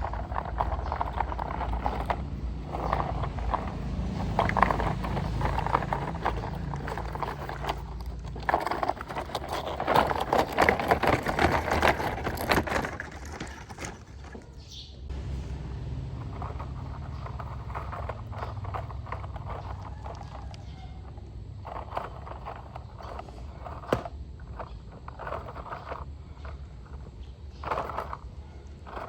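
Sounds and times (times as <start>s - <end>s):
heavy vehicle engine running: 0.0s - 9.9s, 15.1s - 25.0s
clatter of knocks and clicks: 0.0s - 14.6s.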